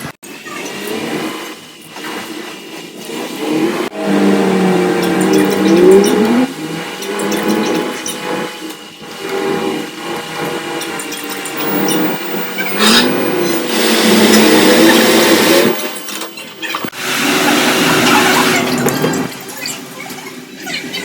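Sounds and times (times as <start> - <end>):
espresso machine humming: 6.4 - 17.9
espresso machine hissing: 8.6 - 17.7.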